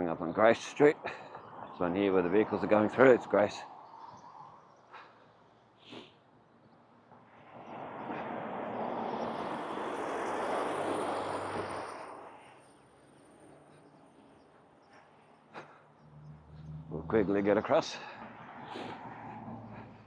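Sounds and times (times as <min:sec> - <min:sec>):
vehicle driving past: 0:07.3 - 0:14.2, 0:15.6 - 0:20.0.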